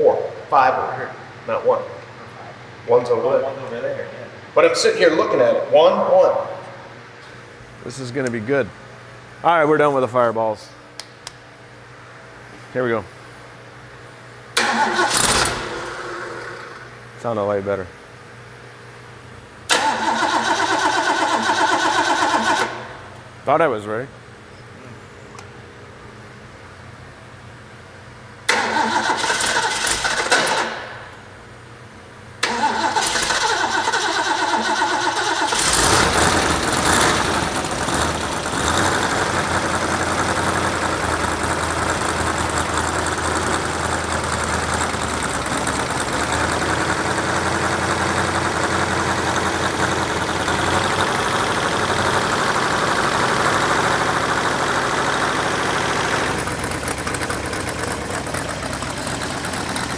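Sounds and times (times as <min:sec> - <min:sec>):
engine starter cranking: 0:14.6 - 0:16.7, 0:19.7 - 0:22.9, 0:28.5 - 0:30.9, 0:32.4 - 0:59.9
engine revving and running: 0:35.4 - 0:59.9.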